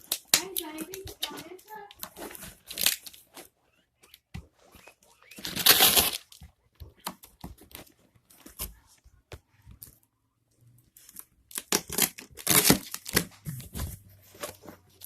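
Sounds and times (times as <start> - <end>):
cardboard ripping: 4.8 - 6.4, 11.5 - 14.9.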